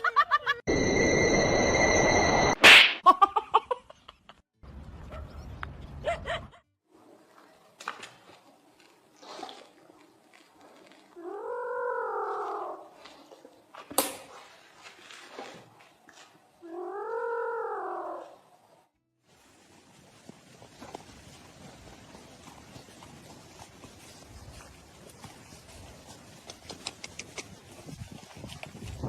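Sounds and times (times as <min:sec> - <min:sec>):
animal's long rising call: 0:11.2 - 0:13.0, 0:16.6 - 0:18.4
clicks and rustles: 0:26.3 - 0:27.8.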